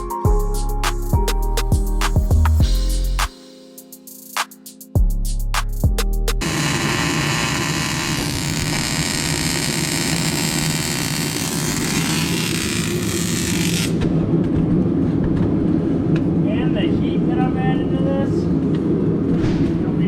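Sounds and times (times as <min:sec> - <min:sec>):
welding arc hissing and crackling: 0:06.4 - 0:14.0.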